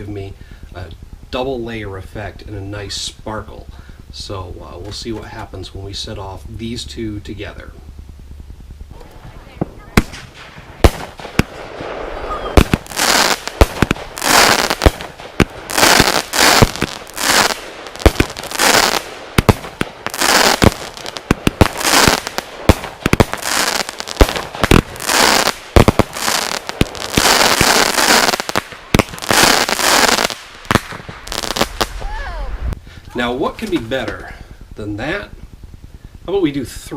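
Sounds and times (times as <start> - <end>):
firework launch reports: 0.0 - 8.3, 8.9 - 36.9
firework shells bursting: 8.9 - 32.1.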